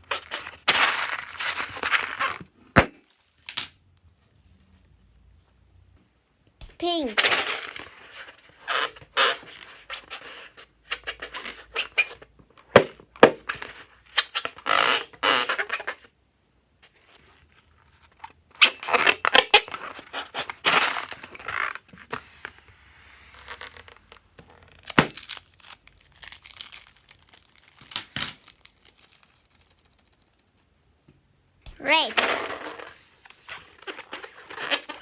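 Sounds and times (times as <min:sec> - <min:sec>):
sticky slime crackling and popping: 0:24.8 - 0:30.3.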